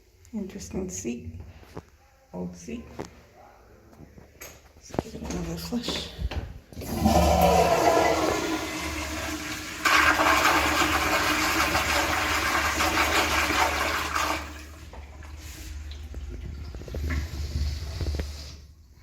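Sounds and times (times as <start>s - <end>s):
toilet flushing: 6.7s - 19.0s.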